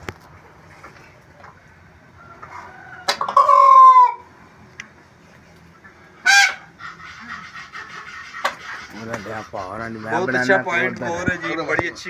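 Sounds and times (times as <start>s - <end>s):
fowl calling: 2.2s - 4.4s, 5.7s - 12.0s.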